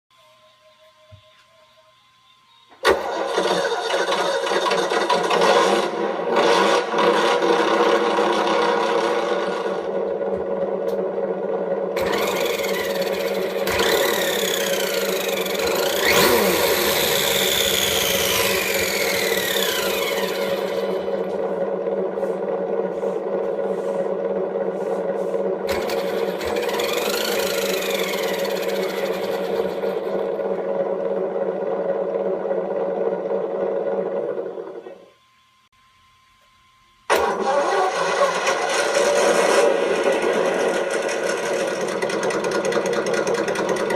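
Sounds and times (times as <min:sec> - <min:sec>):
high whines rising and falling: 0:06.1 - 0:35.1.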